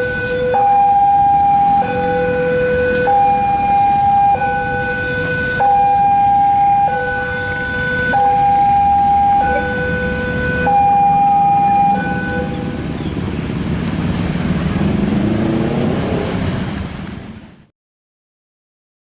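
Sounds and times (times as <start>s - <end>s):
two-tone siren: 0.0s - 12.8s
heavy vehicle rumbling past: 0.0s - 17.7s.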